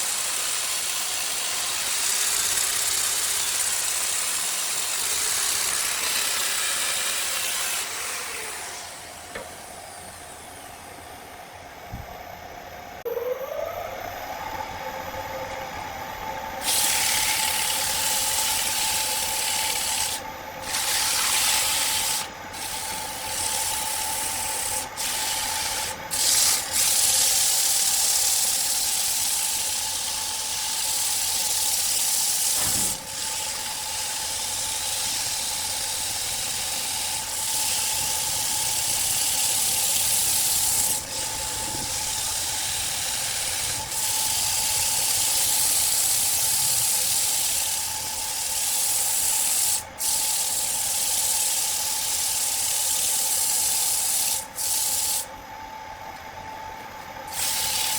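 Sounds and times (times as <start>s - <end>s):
lathe whine: 0.0s - 57.9s
sandpaper hissing on wood: 18.0s - 28.2s, 43.0s - 55.3s, 57.3s - 57.9s.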